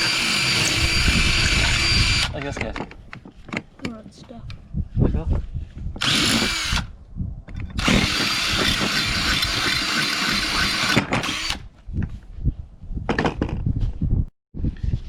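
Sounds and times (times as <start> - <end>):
power drill boring through metal: 0.0 - 2.4, 6.0 - 6.9, 7.8 - 11.6.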